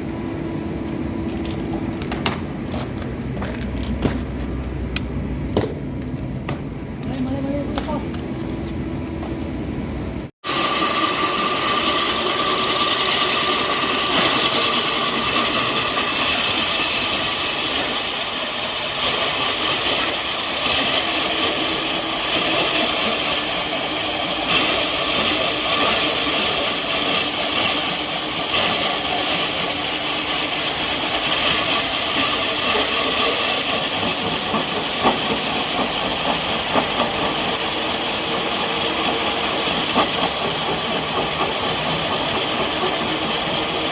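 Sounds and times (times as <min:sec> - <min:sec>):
core drill hiss and whine: 0:10.4 - 0:43.9.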